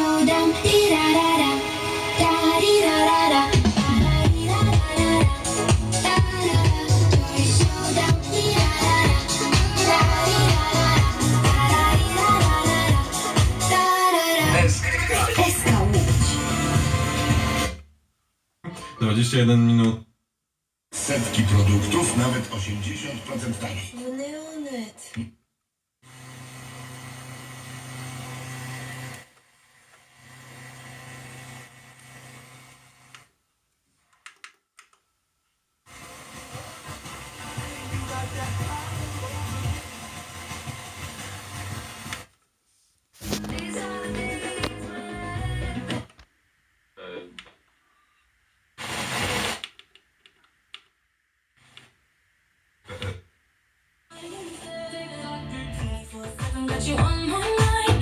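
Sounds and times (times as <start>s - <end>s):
radio tuner low hum: 14.4s - 17.6s, 21.0s - 24.6s, 43.2s - 46.2s
radio static hiss: 21.0s - 24.2s, 43.2s - 45.0s.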